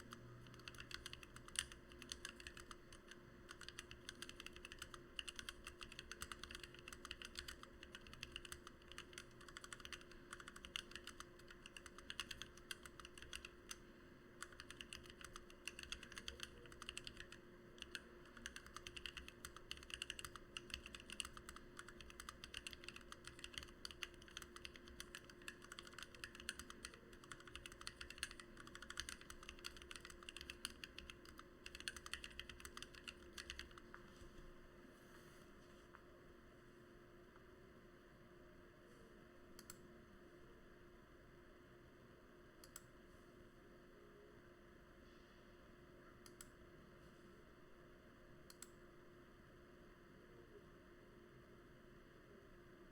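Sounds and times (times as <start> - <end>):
fast mechanical keyboard typing: 0.0 - 13.8, 14.4 - 34.0.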